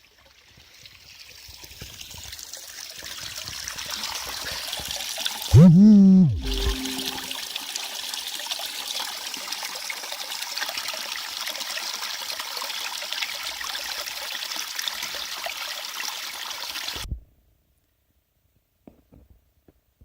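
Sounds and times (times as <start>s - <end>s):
brook trickling: 8.1s - 16.9s.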